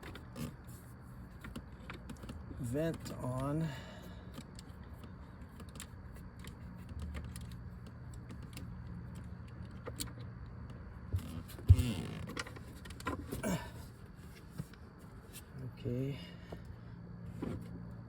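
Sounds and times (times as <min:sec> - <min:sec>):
light clicks and creaks: 0:00.0 - 0:13.4
steady low hum: 0:00.0 - 0:18.0.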